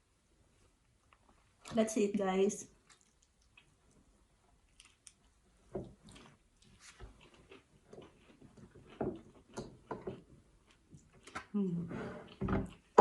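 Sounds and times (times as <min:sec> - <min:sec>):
person chewing fried food: 0:02.8 - 0:11.5.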